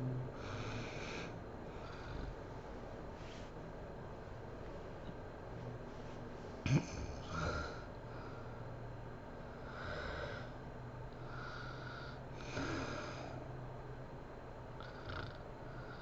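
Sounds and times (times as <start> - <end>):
woman snoring: 0.0 - 2.4, 6.7 - 7.9, 9.6 - 10.6, 11.3 - 13.4, 14.8 - 16.0.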